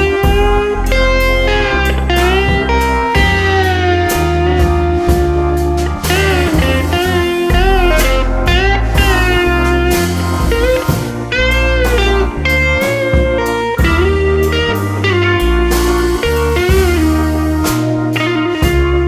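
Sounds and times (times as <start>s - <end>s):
guitar melody over beat: 0.0s - 19.0s.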